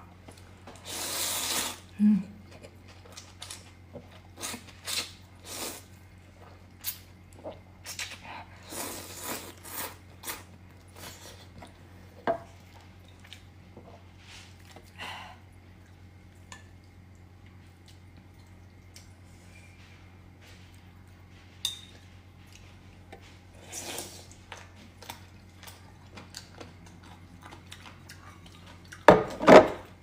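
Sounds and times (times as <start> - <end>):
slurping and chewing noodles: 6.8 - 11.8.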